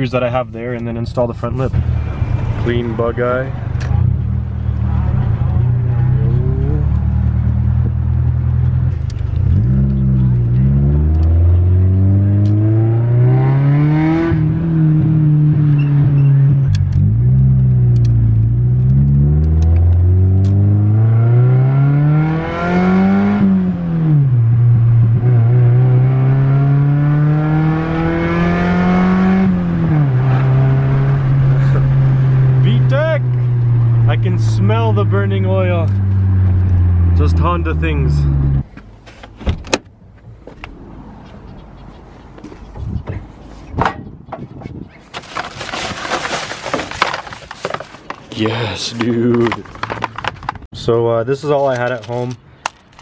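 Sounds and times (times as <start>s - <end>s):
car engine accelerating hard: 1.7s - 38.7s.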